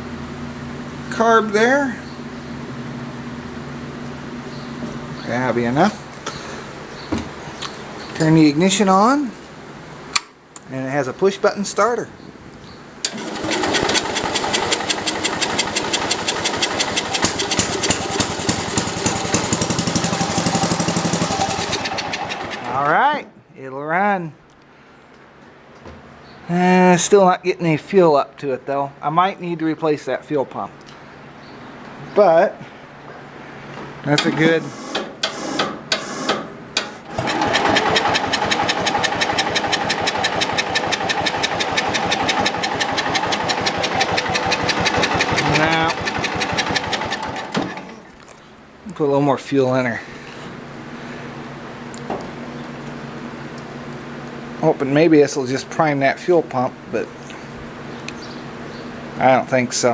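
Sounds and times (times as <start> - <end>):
push-button starter cranking: 13.0 - 22.9, 34.2 - 48.0
mower engine running: 13.0 - 23.1, 34.2 - 48.1.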